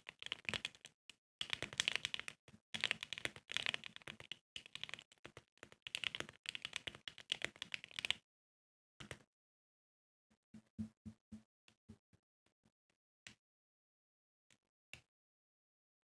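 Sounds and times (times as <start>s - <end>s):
mechanical keyboard typing: 1.4s - 5.0s, 5.9s - 8.1s.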